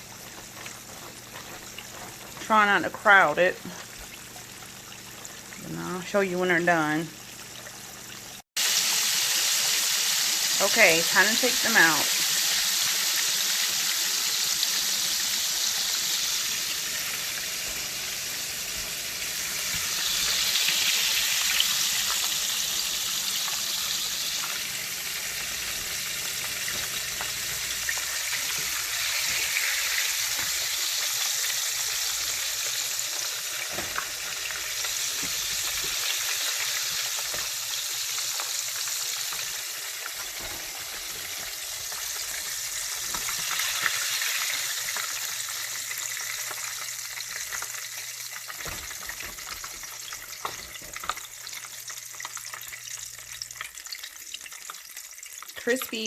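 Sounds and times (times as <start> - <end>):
chicken deep-frying in oil: 0.0 - 56.0.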